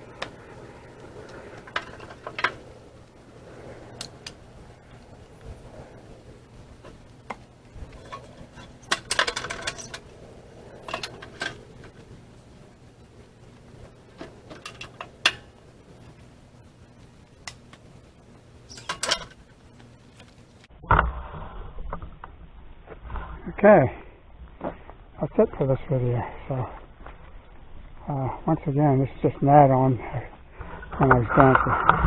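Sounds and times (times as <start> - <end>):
firewood clattering: 0.0 - 5.7, 6.5 - 16.3, 18.6 - 21.1.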